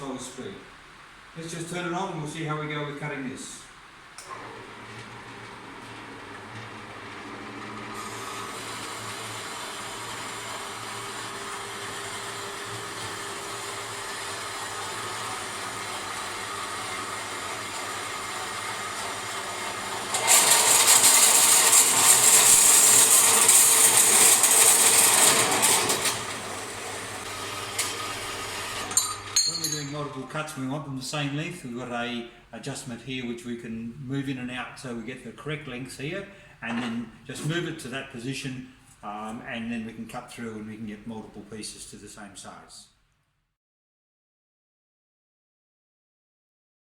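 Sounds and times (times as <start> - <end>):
bandsaw motor humming: 4.3 - 29.4
bandsaw blade cutting steel: 28.8 - 30.1.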